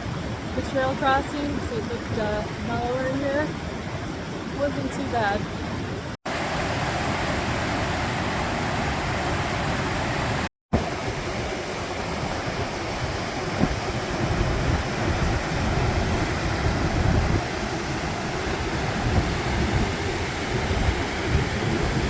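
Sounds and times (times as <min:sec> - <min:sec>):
creek water rushing: 0:00.0 - 0:22.0.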